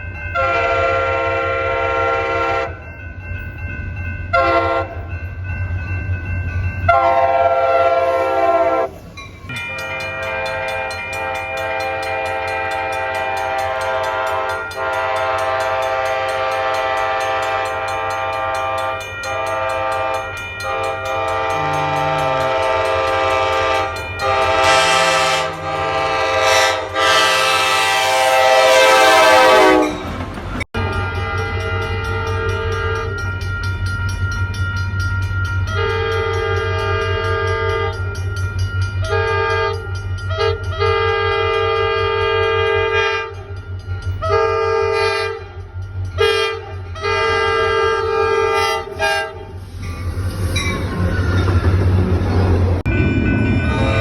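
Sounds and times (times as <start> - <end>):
locomotive air horn chord: 0.4 - 2.8, 4.3 - 5.0, 6.9 - 9.0, 9.7 - 30.0, 30.8 - 33.1, 39.0 - 43.4, 44.2 - 45.5, 46.2 - 49.6, 53.6 - 54.0.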